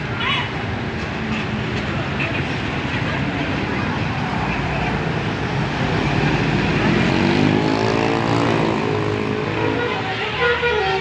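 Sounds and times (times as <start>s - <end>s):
bus passing: 0.0s - 11.0s
pitched bus horn: 9.4s - 11.0s.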